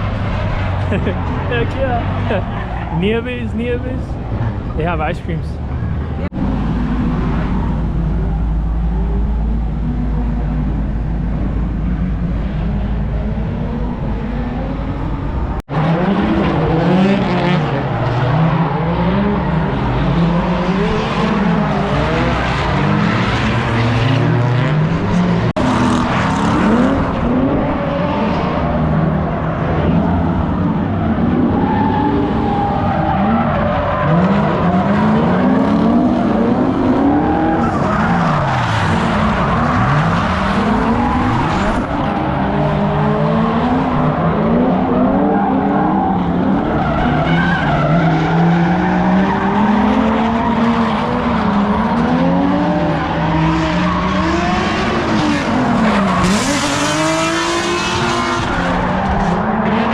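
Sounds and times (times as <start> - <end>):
car engines revving hard: 0.0 - 59.9.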